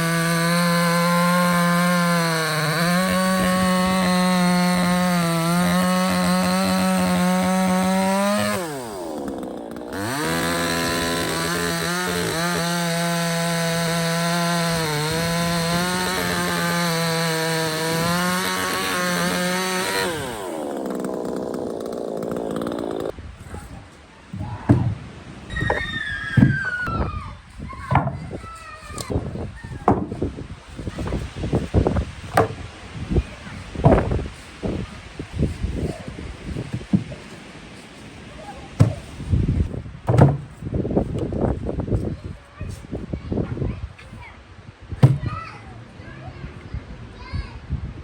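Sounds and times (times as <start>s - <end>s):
chainsaw cutting wood: 0.0s - 23.2s, 29.9s - 32.7s, 40.1s - 40.6s, 45.0s - 45.3s
knocks: 27.9s - 28.3s, 29.8s - 30.2s, 32.3s - 32.6s, 40.1s - 40.5s.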